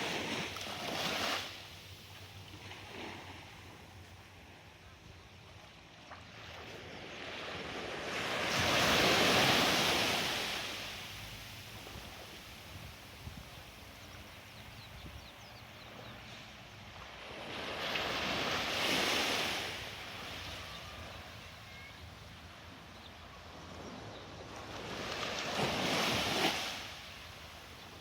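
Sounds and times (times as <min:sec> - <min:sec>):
sea waves breaking on beach: 0:00.0 - 0:04.0, 0:06.5 - 0:14.4, 0:16.8 - 0:21.9, 0:24.4 - 0:28.0
wind rumble on microphone: 0:11.7 - 0:15.6.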